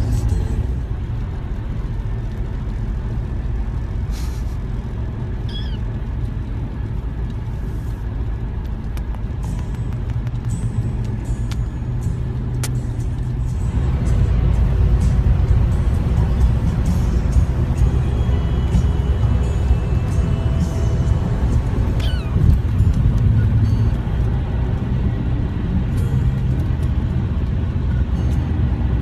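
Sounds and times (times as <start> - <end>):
low rumble of moving car: 0.0 - 29.0
cat meowing: 5.5 - 5.8, 22.0 - 22.5.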